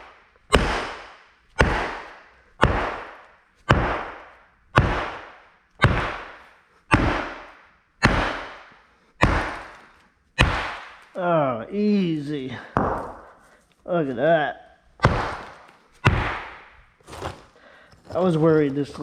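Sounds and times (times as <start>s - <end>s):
sledgehammer pounding concrete: 0.0s - 11.2s, 12.7s - 13.3s, 15.0s - 17.4s.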